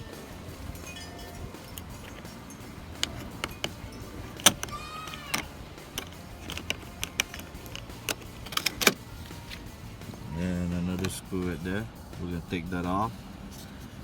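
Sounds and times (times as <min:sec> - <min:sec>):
steady low hum: 0:00.0 - 0:14.0
plastic trim clicking and snapping: 0:02.9 - 0:09.6.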